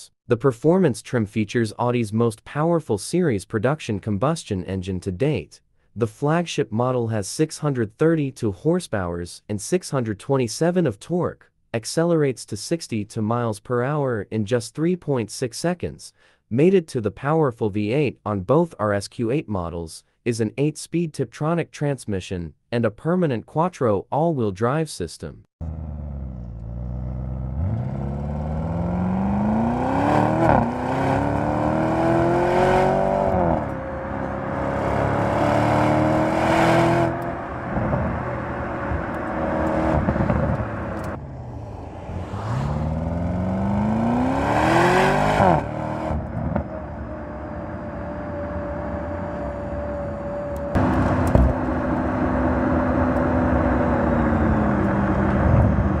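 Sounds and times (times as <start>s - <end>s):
car engine accelerating hard: 25.6s - 56.0s.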